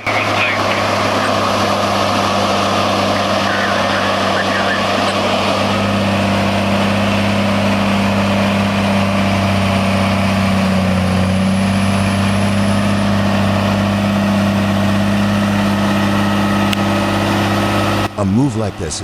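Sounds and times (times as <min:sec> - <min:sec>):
diesel truck engine droning: 0:00.0 - 0:19.0.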